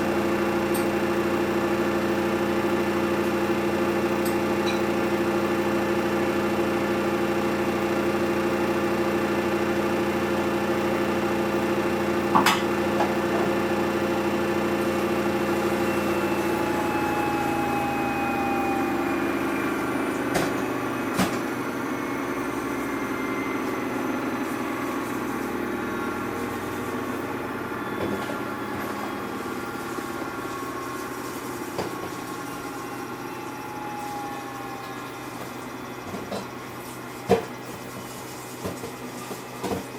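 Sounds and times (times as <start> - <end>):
washing machine motor hum: 0.0 - 39.9
whining tone dropping in pitch: 15.6 - 24.6, 27.1 - 36.3.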